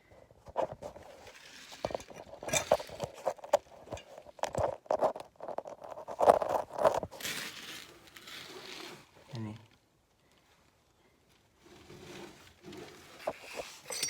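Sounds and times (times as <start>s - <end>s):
metal tools clinking: 1.9s - 4.3s, 13.3s - 14.0s.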